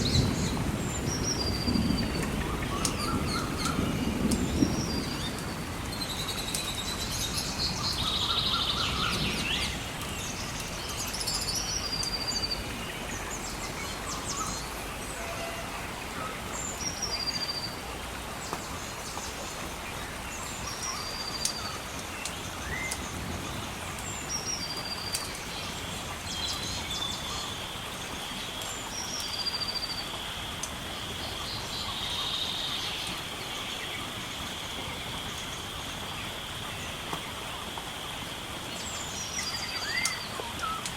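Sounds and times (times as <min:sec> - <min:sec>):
fire crackling: 0:00.0 - 0:15.0, 0:15.8 - 0:32.0
rushing water: 0:00.0 - 0:40.9.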